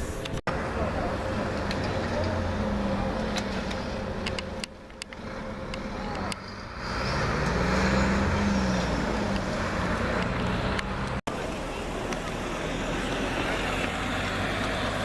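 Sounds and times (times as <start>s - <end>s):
road traffic: 0.0s - 15.0s
vehicle passing: 0.5s - 15.0s.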